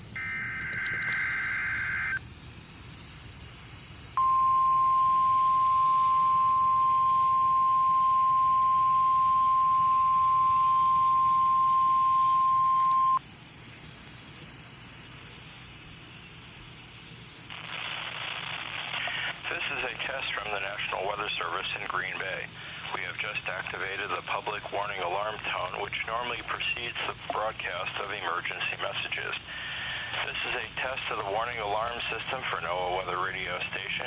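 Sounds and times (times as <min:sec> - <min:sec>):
steady warning alarm tone: 0:00.0 - 0:02.2, 0:04.2 - 0:13.2
radio hiss: 0:00.0 - 0:34.0.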